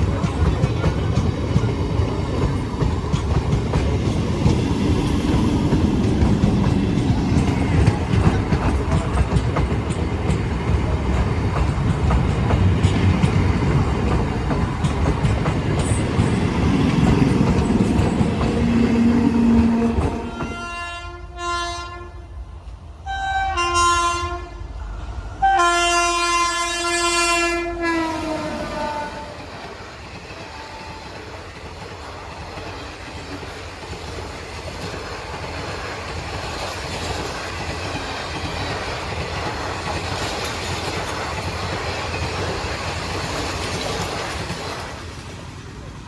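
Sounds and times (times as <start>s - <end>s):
train wheels clattering over rails: 0.0s - 20.8s, 28.7s - 46.0s
locomotive horn blasts: 18.7s - 22.3s, 23.1s - 24.6s, 25.4s - 29.4s.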